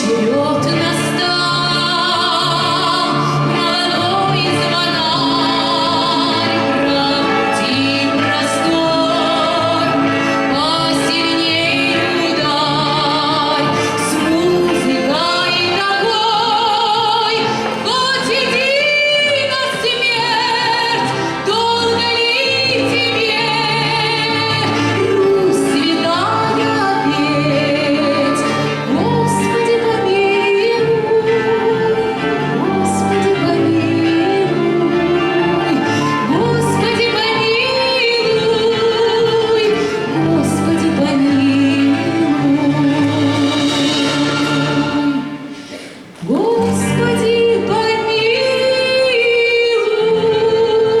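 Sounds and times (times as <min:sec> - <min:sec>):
orchestral accompaniment: 0:00.0 - 0:51.0.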